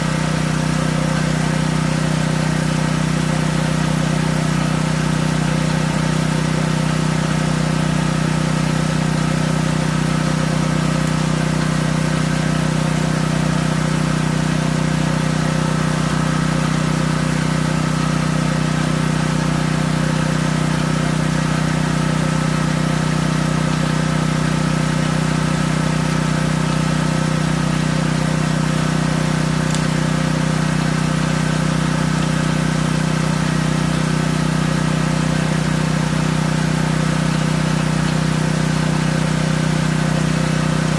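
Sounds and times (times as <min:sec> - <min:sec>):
generator engine hum: 0:00.0 - 0:40.9.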